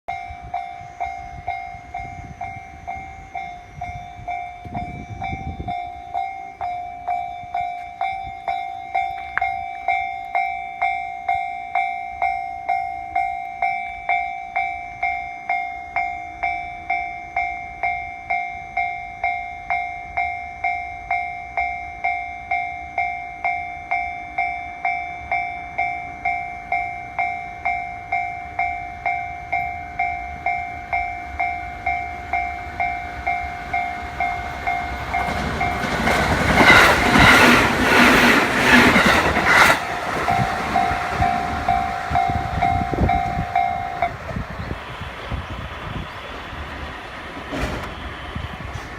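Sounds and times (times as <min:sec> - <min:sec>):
level-crossing bell dinging: 0:00.1 - 0:44.8.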